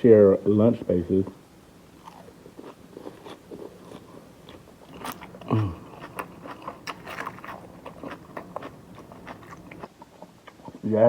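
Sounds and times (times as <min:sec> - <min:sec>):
crunchy chewing: 0:01.1 - 0:10.8
mouth clicks: 0:02.0 - 0:09.9
person making low voiced sound: 0:05.5 - 0:05.9.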